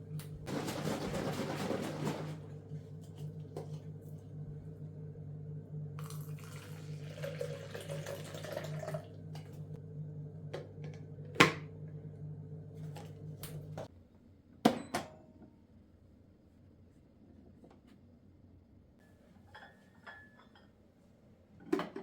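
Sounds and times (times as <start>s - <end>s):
coffee machine humming: 0.0s - 13.9s
liquid pouring: 6.0s - 9.7s.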